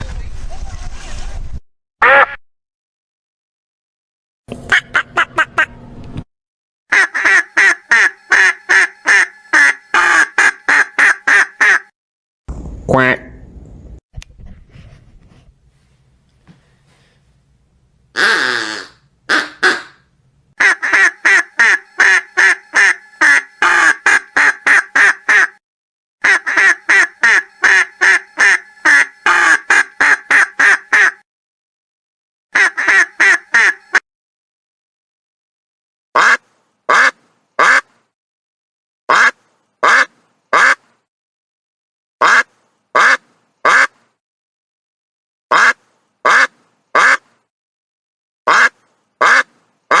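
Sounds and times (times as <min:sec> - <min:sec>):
duck quacking: 0:02.0 - 0:02.4, 0:04.7 - 0:05.7, 0:06.9 - 0:11.9, 0:13.0 - 0:13.3, 0:18.2 - 0:25.6, 0:26.2 - 0:31.2, 0:32.6 - 0:34.0, 0:36.2 - 0:37.9, 0:39.1 - 0:40.8, 0:42.2 - 0:43.9, 0:45.5 - 0:47.2, 0:48.5 - 0:50.0.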